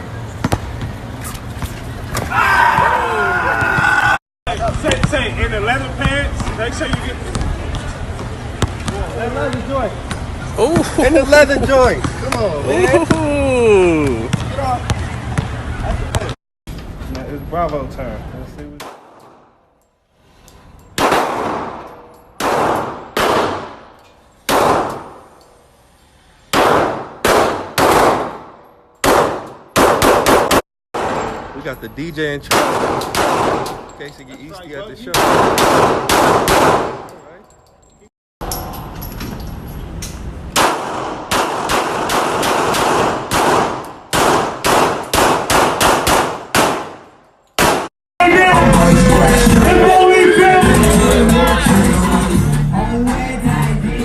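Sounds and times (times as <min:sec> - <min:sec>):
gunshots with echo: 0:21.0 - 0:23.9, 0:24.5 - 0:25.3, 0:26.5 - 0:31.5, 0:32.5 - 0:33.8, 0:35.1 - 0:37.1, 0:40.6 - 0:47.9.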